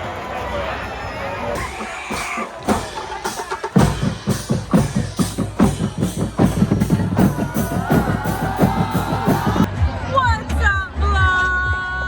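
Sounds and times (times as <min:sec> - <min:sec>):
bass drum and snare beat: 0:01.6 - 0:09.7.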